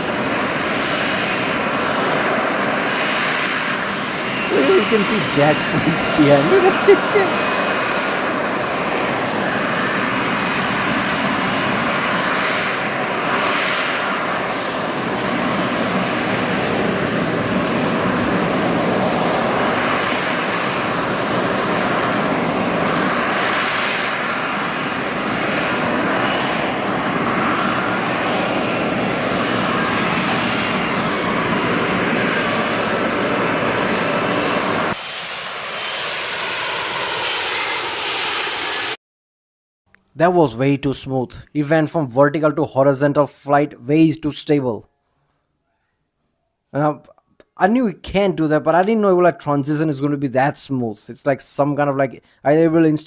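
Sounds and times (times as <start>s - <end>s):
jet engine roaring: 8.8s - 39.0s.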